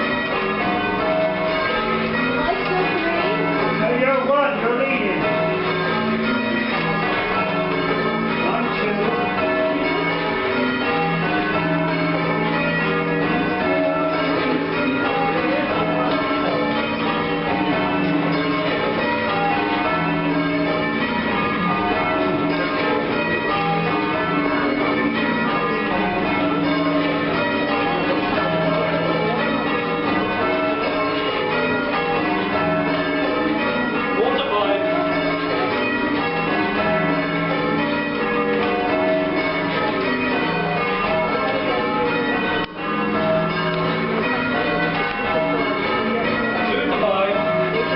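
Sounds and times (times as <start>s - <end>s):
church bells pealing: 0.0s - 47.9s.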